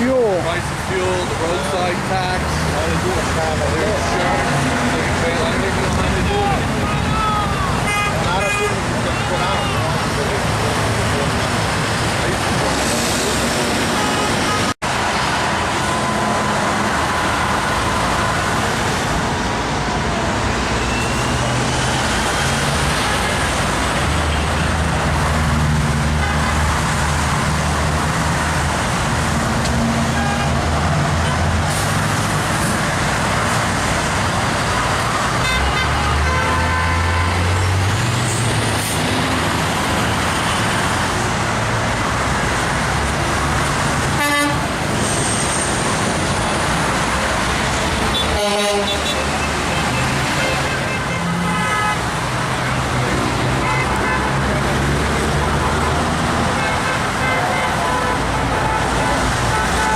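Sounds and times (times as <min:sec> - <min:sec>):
heavy road traffic: 0:00.0 - 0:59.9
car and truck horns honking: 0:01.1 - 0:10.4, 0:12.7 - 0:18.8, 0:20.7 - 0:24.9, 0:26.0 - 0:27.4, 0:29.8 - 0:31.8, 0:35.1 - 0:37.9, 0:44.0 - 0:46.0, 0:48.0 - 0:59.9.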